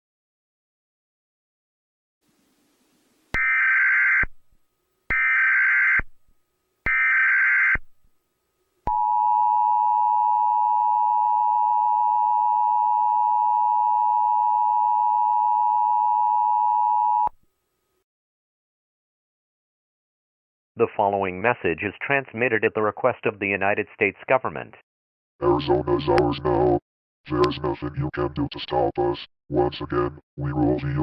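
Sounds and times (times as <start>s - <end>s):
steady two-tone attention signal: 8.9s - 17.3s.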